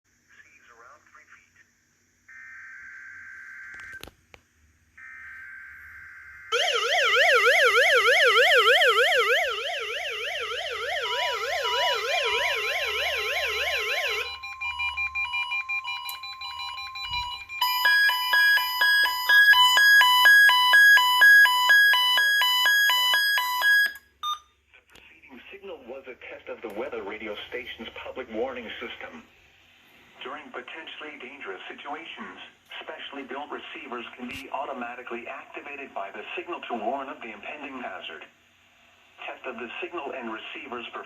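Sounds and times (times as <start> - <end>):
fast warbling siren tone: 5.0 - 24.0
steady alert tone: 6.5 - 22.4
pulsing multi-tone beeping: 6.5 - 24.5
quick beeps: 14.2 - 24.6.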